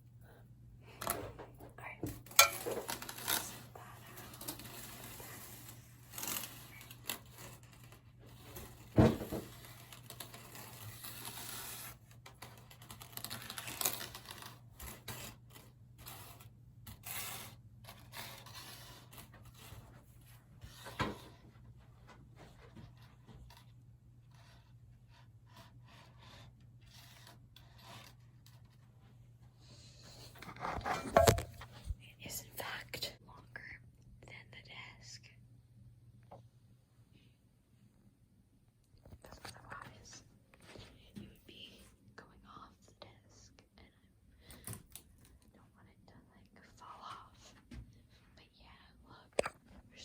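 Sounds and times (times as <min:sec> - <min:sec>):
paperclips clicking and scraping: 0:09.6 - 0:19.7.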